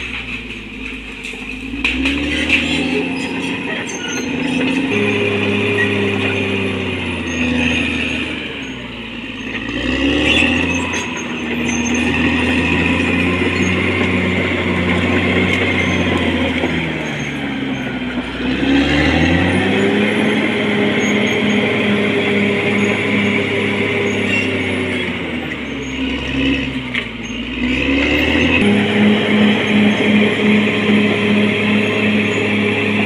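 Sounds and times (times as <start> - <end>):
bulldozer diesel engine under load: 0.0 - 33.0.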